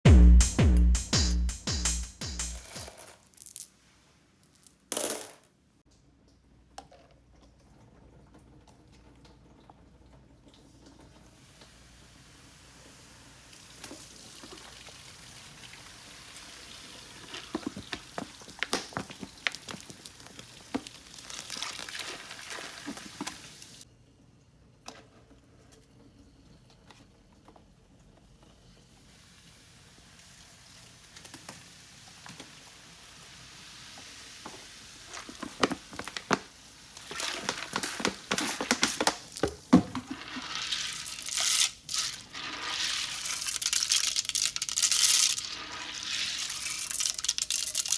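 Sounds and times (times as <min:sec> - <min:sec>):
liquid pouring and splashing: 0:13.5 - 0:23.8, 0:34.0 - 0:47.9
wrappers crinkling: 0:17.3 - 0:23.0, 0:35.1 - 0:39.5, 0:40.2 - 0:47.9.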